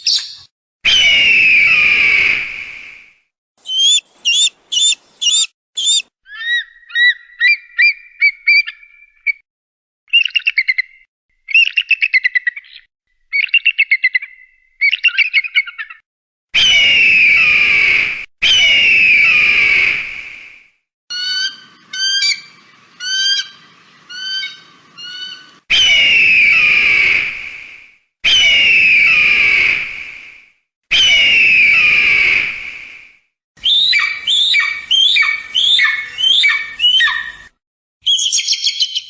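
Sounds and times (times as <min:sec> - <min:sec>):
eagle calls: 0:03.6 - 0:08.9, 0:21.1 - 0:27.1, 0:33.6 - 0:37.5.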